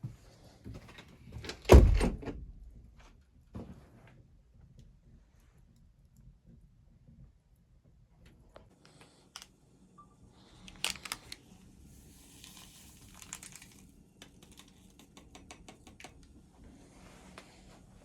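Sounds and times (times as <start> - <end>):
rustling and crinkling: 10.6 - 15.4.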